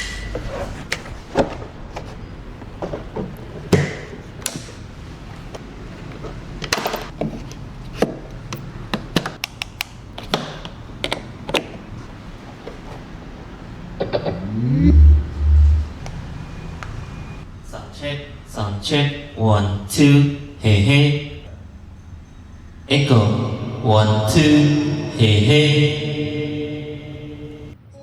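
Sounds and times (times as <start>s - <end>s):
speaker and stand knocks and clicks: 0.0s - 13.1s.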